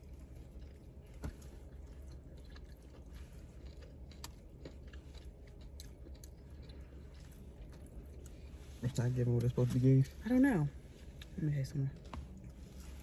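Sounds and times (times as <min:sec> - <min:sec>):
person chewing food: 0:00.0 - 0:08.8, 0:12.0 - 0:13.0.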